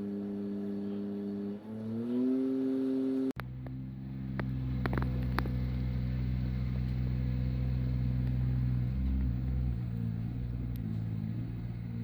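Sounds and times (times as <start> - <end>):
heavy equipment engine running: 3.4 - 12.0.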